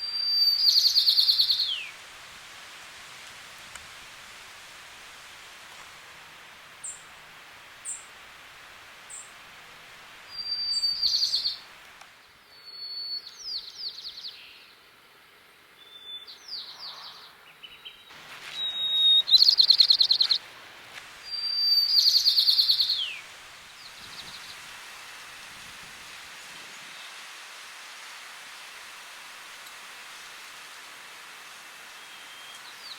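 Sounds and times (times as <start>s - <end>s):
sparrow singing whistles and trills: 0.0s - 1.9s, 10.3s - 11.6s, 12.5s - 14.7s, 15.8s - 20.4s, 21.2s - 24.6s
steady hiss: 0.0s - 32.9s.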